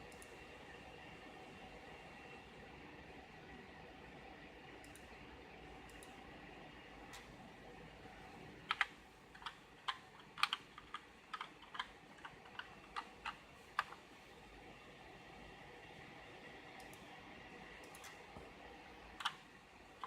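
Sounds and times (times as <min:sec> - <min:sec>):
mechanical keyboard keystroke clicks: 0:08.6 - 0:14.0.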